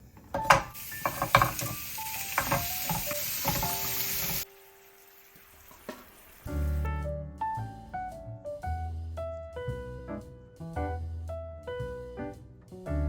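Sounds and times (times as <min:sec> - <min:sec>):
chicken sizzling in frying pan: 0:00.0 - 0:06.8
utensil knocking against pan: 0:00.3 - 0:04.4
music: 0:00.4 - 0:13.0.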